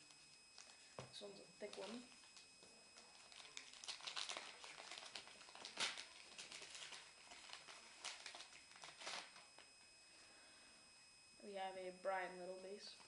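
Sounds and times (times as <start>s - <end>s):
card wrapper rustling and crinkling: 0.0s - 1.0s, 1.6s - 9.8s.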